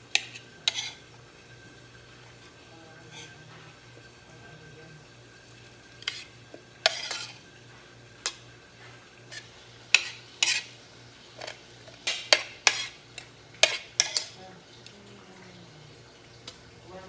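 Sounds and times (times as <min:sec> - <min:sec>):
utensils clinking against dishes: 0:00.1 - 0:01.2, 0:02.3 - 0:04.8, 0:05.9 - 0:14.4.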